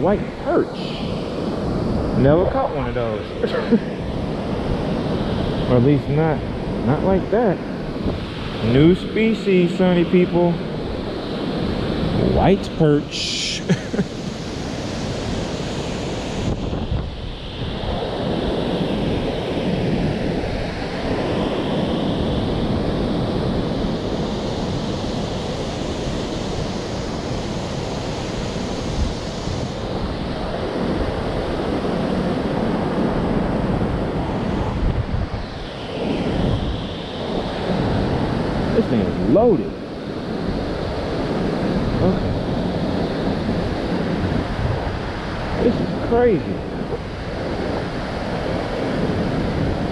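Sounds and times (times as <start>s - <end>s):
water rushing: 0.0s - 19.8s
wind blowing across microphone: 0.0s - 49.9s.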